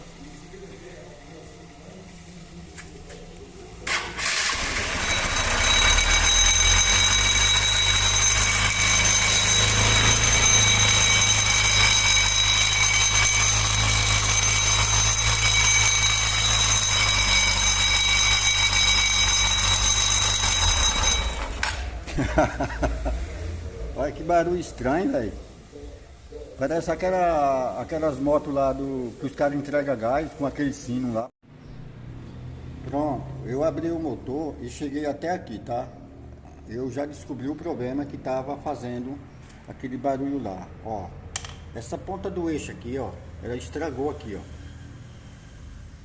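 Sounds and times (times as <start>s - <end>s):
motorcycle engine running: 3.9s - 22.0s
high bell-like ringing: 4.6s - 22.9s.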